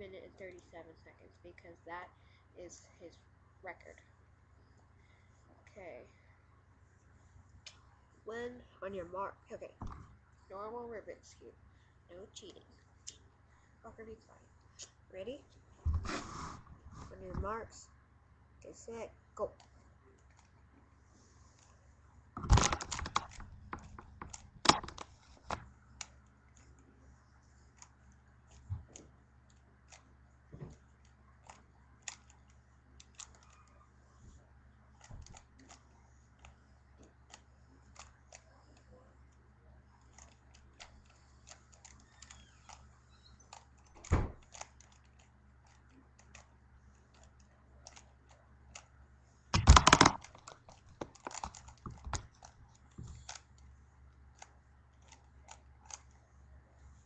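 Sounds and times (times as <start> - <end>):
steady low hum: 0.0 - 57.0
plastic puzzle cube clicking: 33.0 - 33.5, 40.1 - 42.8, 47.1 - 48.1, 49.6 - 52.6, 54.4 - 56.1.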